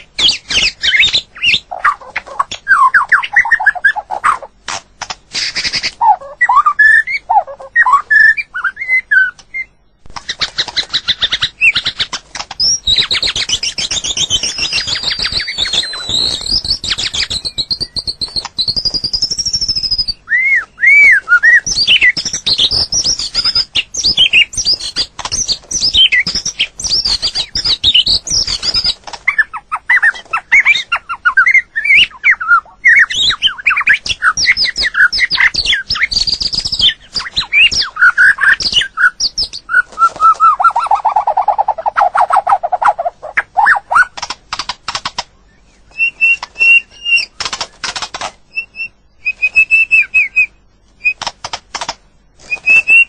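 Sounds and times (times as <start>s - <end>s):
bird singing whistled phrases: 0.0s - 4.4s, 5.4s - 9.9s, 12.6s - 44.2s, 45.5s - 47.4s, 48.5s - 51.2s, 52.5s - 53.0s.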